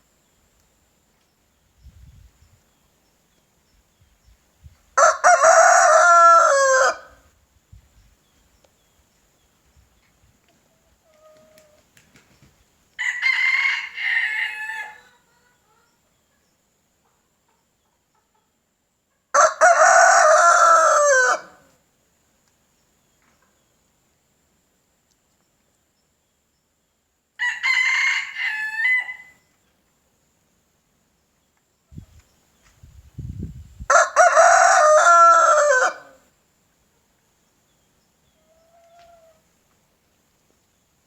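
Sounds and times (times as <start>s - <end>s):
rooster crowing: 5.0s - 7.2s, 13.0s - 15.1s, 19.3s - 21.7s, 27.4s - 29.4s, 33.9s - 36.2s.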